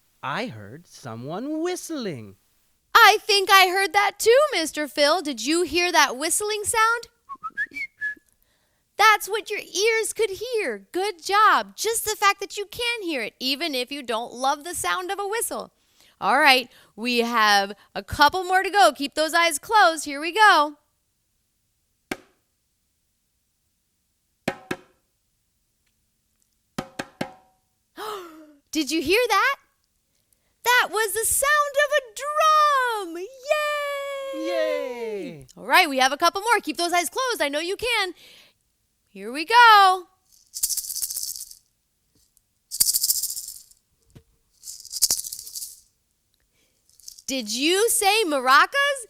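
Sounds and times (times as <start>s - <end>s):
maracas rattling: 40.3s - 41.7s, 42.7s - 43.8s, 44.6s - 45.9s, 46.9s - 47.3s.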